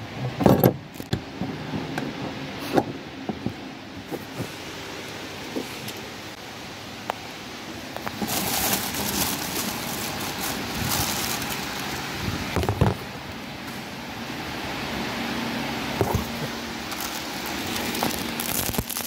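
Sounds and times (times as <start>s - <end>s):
hands rustling parts: 7.9s - 13.8s, 16.0s - 19.0s.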